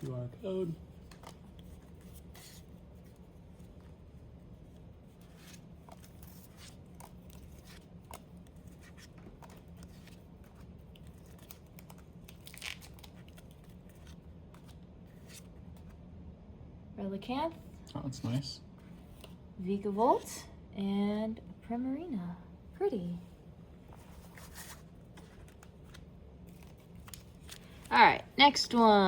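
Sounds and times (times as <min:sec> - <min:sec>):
cards rustling and flicking: 0:00.9 - 0:15.9, 0:23.9 - 0:28.0.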